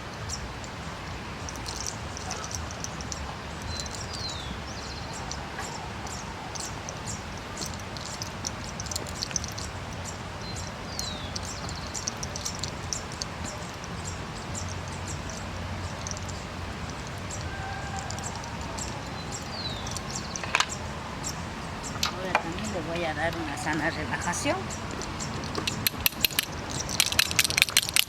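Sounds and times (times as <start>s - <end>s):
background noise: 0.0s - 28.0s
small birds chirping: 0.0s - 28.0s.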